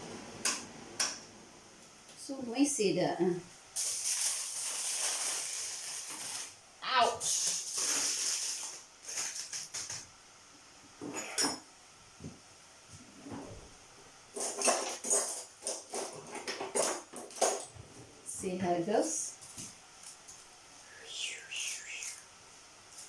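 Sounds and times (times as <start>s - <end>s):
hiss: 3.8s - 6.6s, 7.2s - 10.0s, 20.8s - 23.0s
utensils clinking on dishes: 11.0s - 11.7s, 14.3s - 17.7s.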